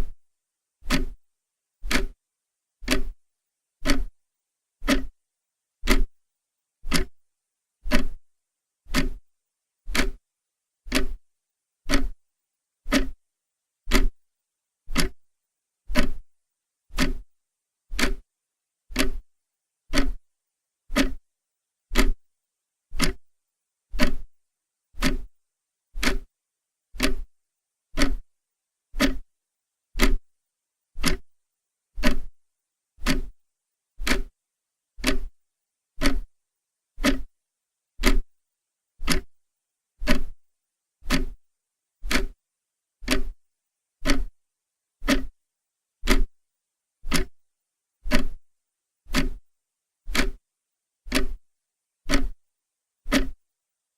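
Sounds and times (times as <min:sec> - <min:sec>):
clock ticking: 0:00.8 - 0:01.2, 0:01.8 - 0:02.2, 0:02.8 - 0:03.2, 0:03.8 - 0:04.2, 0:04.8 - 0:05.1, 0:05.8 - 0:06.1, 0:06.9 - 0:07.2, 0:07.9 - 0:08.2, 0:08.9 - 0:09.2, 0:09.9 - 0:10.2, 0:10.9 - 0:11.2, 0:11.9 - 0:12.2, 0:12.9 - 0:13.2, 0:13.9 - 0:14.2, 0:14.9 - 0:15.3, 0:15.9 - 0:16.2, 0:16.9 - 0:17.2, 0:17.9 - 0:18.2, 0:18.9 - 0:19.2, 0:19.9 - 0:20.2, 0:20.9 - 0:21.2, 0:21.9 - 0:22.2, 0:23.0 - 0:23.3, 0:24.0 - 0:24.3, 0:25.0 - 0:25.3, 0:26.0 - 0:26.3, 0:27.0 - 0:27.3, 0:28.0 - 0:28.3, 0:29.0 - 0:29.2, 0:30.0 - 0:30.2, 0:31.0 - 0:31.3, 0:32.0 - 0:32.3, 0:33.0 - 0:33.3, 0:34.0 - 0:34.3, 0:35.0 - 0:35.4, 0:36.0 - 0:36.3, 0:37.0 - 0:37.3, 0:38.0 - 0:38.3, 0:39.0 - 0:39.4, 0:40.0 - 0:40.4, 0:41.0 - 0:41.4, 0:42.0 - 0:42.4, 0:43.0 - 0:43.4, 0:44.0 - 0:44.4, 0:45.0 - 0:45.3, 0:46.0 - 0:46.3, 0:47.1 - 0:47.4, 0:48.1 - 0:48.4, 0:49.1 - 0:49.4, 0:50.1 - 0:50.4, 0:51.1 - 0:51.4, 0:52.1 - 0:52.4, 0:53.1 - 0:53.4.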